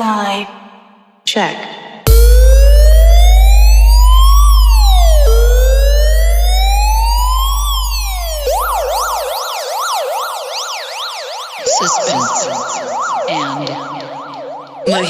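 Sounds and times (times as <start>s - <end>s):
deep bass tone: 2.1s - 9.3s
police siren wailing and yelping: 2.1s - 15.0s.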